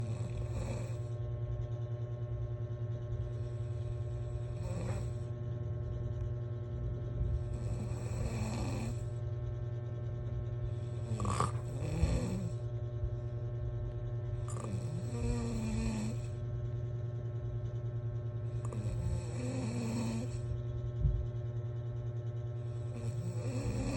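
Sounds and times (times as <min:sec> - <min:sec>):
person snoring: 0:00.0 - 0:01.1, 0:03.4 - 0:05.3, 0:07.4 - 0:09.2, 0:10.7 - 0:12.6, 0:14.4 - 0:16.4, 0:18.4 - 0:20.5, 0:22.6 - 0:23.9
steady low hum: 0:00.0 - 0:23.9.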